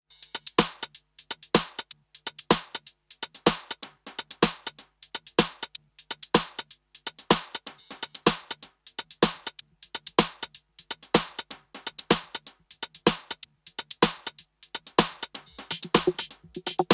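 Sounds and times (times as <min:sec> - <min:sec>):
electronic music with percussive beat: 0:00.1 - 0:16.9.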